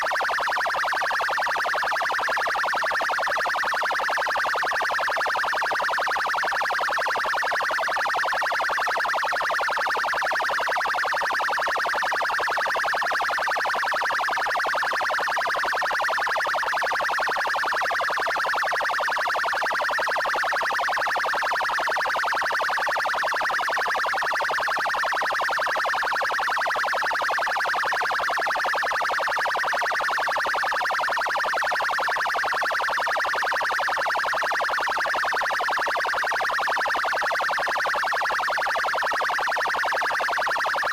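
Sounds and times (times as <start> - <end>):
rapidly pulsing police siren: 0.0 - 40.9.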